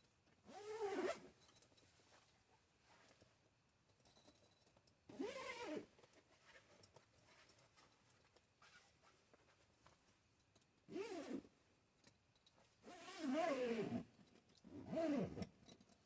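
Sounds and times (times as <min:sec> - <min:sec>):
zipper being pulled: 0:00.5 - 0:01.2, 0:05.2 - 0:05.9, 0:10.9 - 0:11.4, 0:12.9 - 0:14.1, 0:14.7 - 0:15.4.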